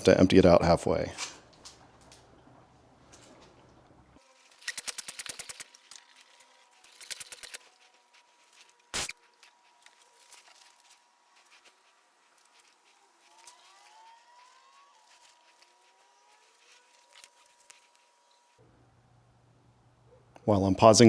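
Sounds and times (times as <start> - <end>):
rapid clicking: 4.5 - 8.0.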